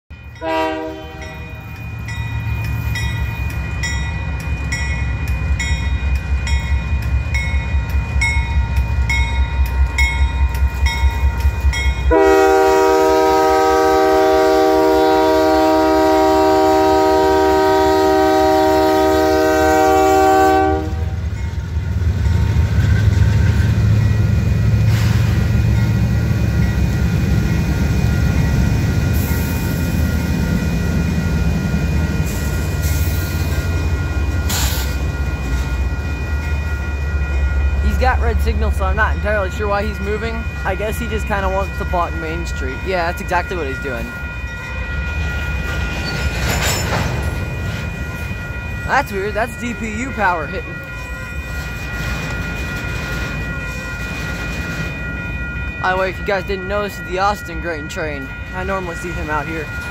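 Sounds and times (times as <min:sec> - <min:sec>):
locomotive bell ringing: 0:00.1 - 0:59.9
train horn: 0:00.4 - 0:01.6, 0:12.1 - 0:21.2.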